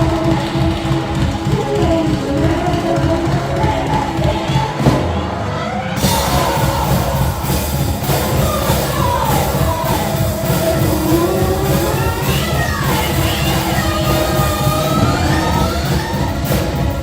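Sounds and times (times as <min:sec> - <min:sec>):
rock band playing live: 0:06.0 - 0:17.0.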